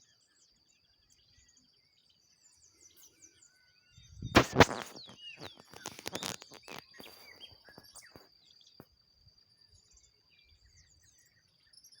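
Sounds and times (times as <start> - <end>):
faint birds chirping: 1.4 - 8.8
sharp clicks: 4.4 - 7.3.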